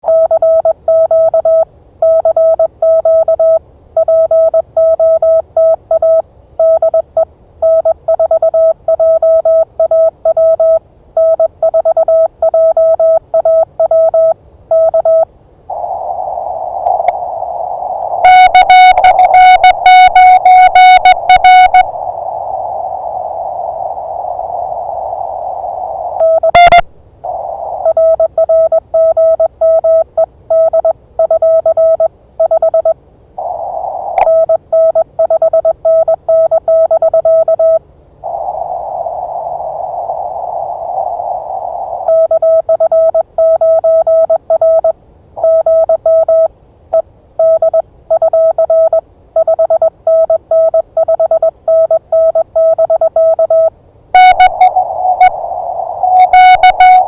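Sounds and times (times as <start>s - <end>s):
morse code tone: 0.0s - 15.3s, 18.2s - 21.9s, 26.2s - 26.8s, 27.8s - 32.9s, 34.2s - 37.8s, 42.1s - 46.5s, 47.4s - 55.4s, 56.1s - 57.0s
radio band noise hiss: 27.2s - 27.9s.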